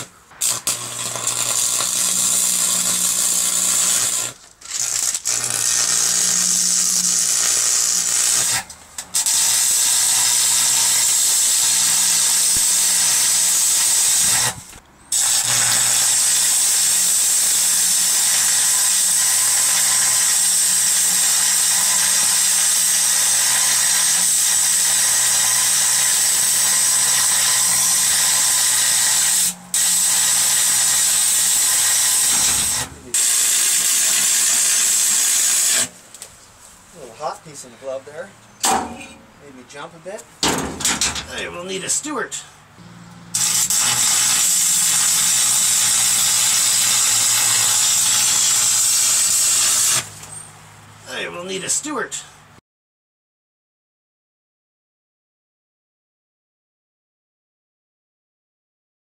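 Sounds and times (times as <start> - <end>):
welding arc hissing and crackling: 0.0 - 36.0, 43.4 - 50.2.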